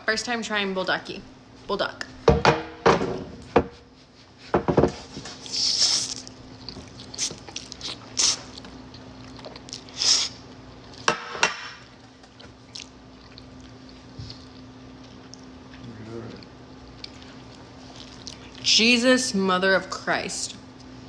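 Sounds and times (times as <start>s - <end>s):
faint steady hum: 0.0s - 21.0s
wet chewing: 5.4s - 11.0s, 12.3s - 18.7s.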